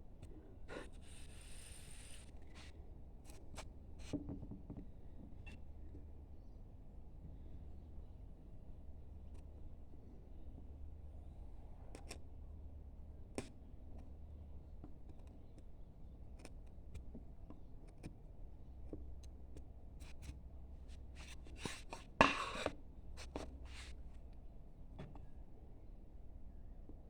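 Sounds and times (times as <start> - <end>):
gouge scraping cuts into wood: 21.2 - 23.9.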